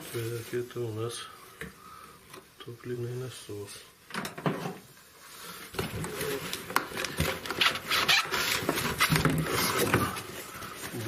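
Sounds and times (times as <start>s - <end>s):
packaging crackling and rustling: 5.6s - 11.0s.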